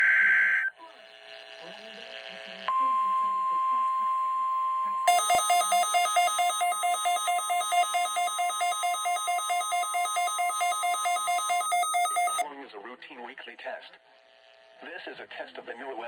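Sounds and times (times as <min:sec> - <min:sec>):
rapid two-pitch alarm beeping: 0:05.1 - 0:12.4
steady warning alarm tone: 0:05.1 - 0:12.4.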